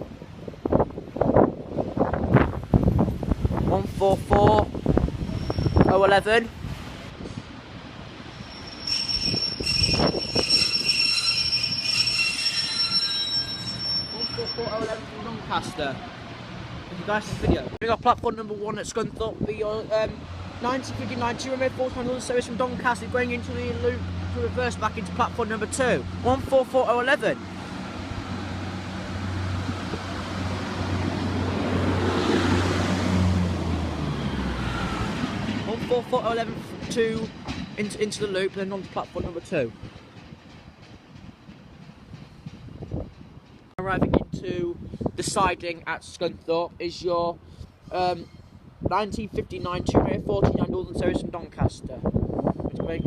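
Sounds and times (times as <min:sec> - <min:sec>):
train wheels squealing: 0:05.2 - 0:06.0, 0:08.3 - 0:15.2
train wheels clunking: 0:35.2 - 0:43.8.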